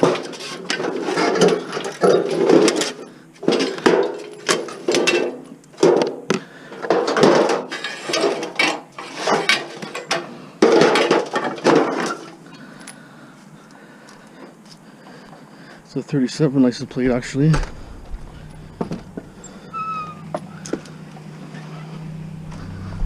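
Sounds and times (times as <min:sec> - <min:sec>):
scrap metal clanking: 0:00.0 - 0:06.2, 0:06.8 - 0:12.7.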